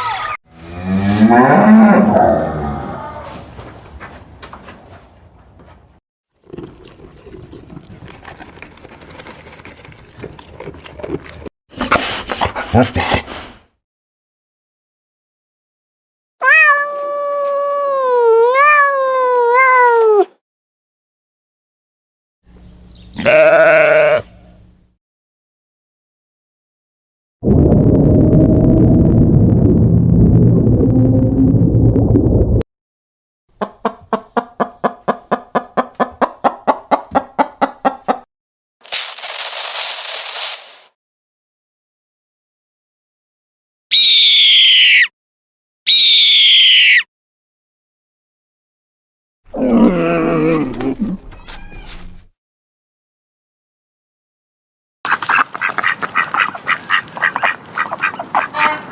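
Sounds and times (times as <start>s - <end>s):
cat yowling: 16.4s - 20.3s, 44.0s - 45.1s, 45.9s - 47.0s, 51.4s - 52.0s.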